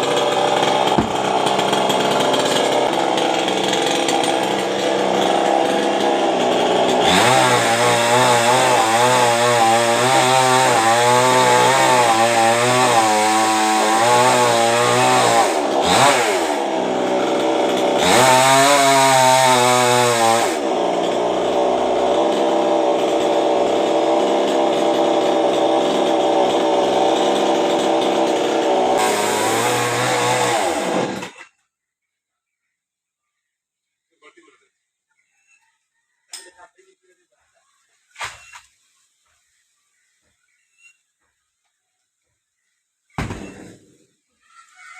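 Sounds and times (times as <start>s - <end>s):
chainsaw cutting wood: 0.0s - 31.5s, 43.2s - 44.0s.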